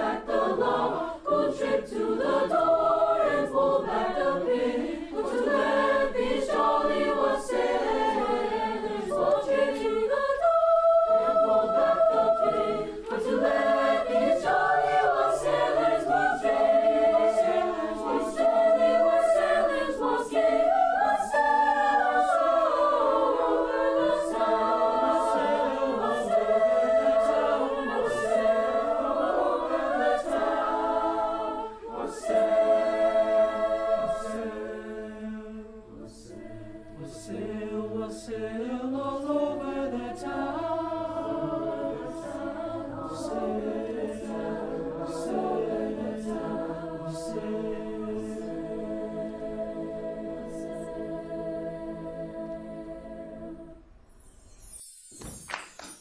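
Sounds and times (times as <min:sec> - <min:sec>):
choir singing in harmony: 0:00.0 - 0:54.9.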